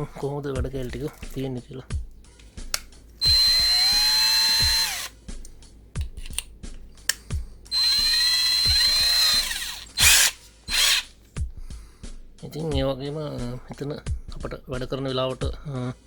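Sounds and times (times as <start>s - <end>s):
cordless drill motor whine: 3.2s - 5.1s, 7.7s - 11.1s.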